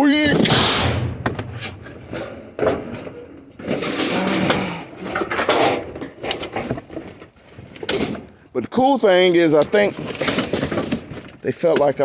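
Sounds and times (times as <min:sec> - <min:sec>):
scrap metal clattering: 0:00.2 - 0:06.0.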